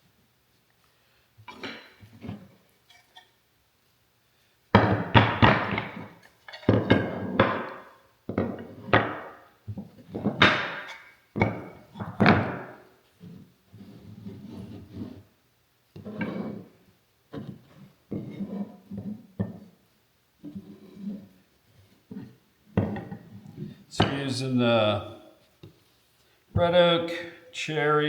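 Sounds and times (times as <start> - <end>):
wooden strips clattering on workbench: 1.5 - 3.3, 4.8 - 12.9.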